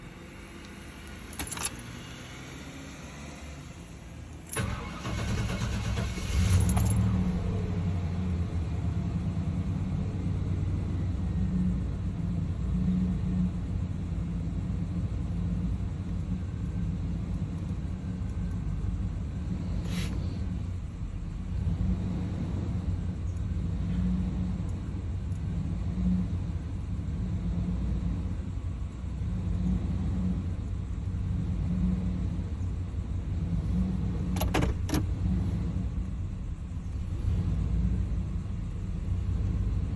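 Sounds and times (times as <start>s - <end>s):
engine cranking: 1.2s - 1.9s, 4.4s - 7.2s
engine rough idle: 3.7s - 12.6s.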